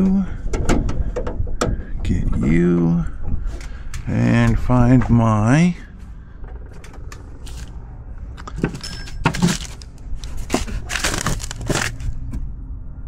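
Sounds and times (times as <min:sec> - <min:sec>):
metal parts clinking: 0:08.4 - 0:12.1.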